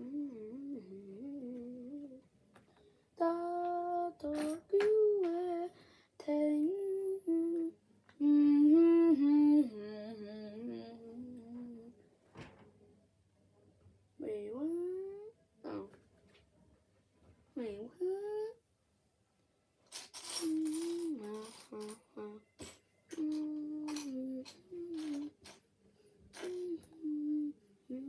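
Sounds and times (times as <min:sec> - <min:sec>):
child humming a tune: 0:00.0 - 0:02.2, 0:03.2 - 0:11.9, 0:14.3 - 0:16.0, 0:17.8 - 0:18.6, 0:20.3 - 0:22.5, 0:23.1 - 0:25.5, 0:26.3 - 0:28.0.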